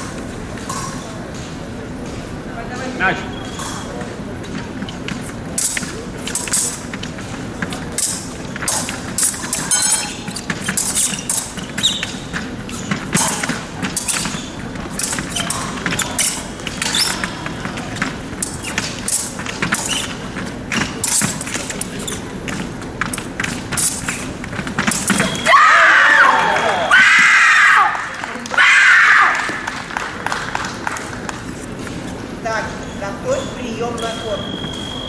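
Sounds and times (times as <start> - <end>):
blades clinking: 8.0 - 25.5
loud yell: 25.4 - 29.6.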